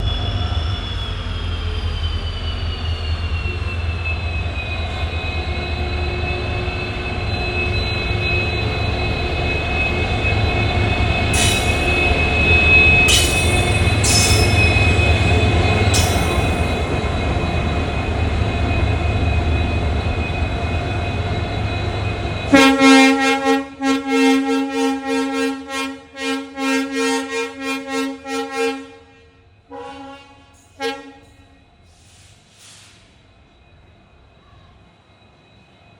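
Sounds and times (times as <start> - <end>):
diesel locomotive engine hum: 0.0 - 35.9
sharp metal clanks: 13.1 - 14.8, 15.9 - 16.8
locomotive horn blast: 22.5 - 31.5.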